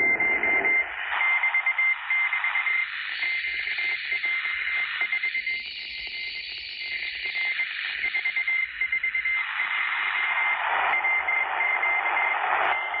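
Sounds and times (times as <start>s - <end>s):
morse code tone: 0.0s - 2.8s, 8.1s - 13.0s
radio hiss: 0.0s - 13.0s.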